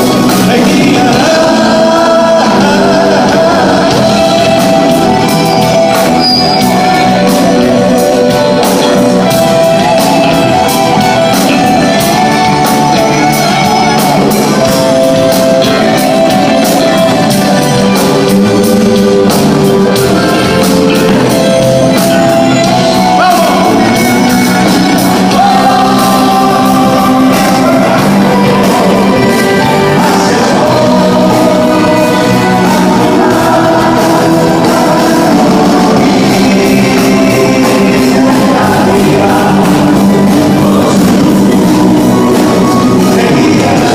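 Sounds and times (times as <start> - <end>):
lead singer vocals: 0.0 - 43.9
live band playing: 0.0 - 43.9
steady drum beat: 0.0 - 43.9.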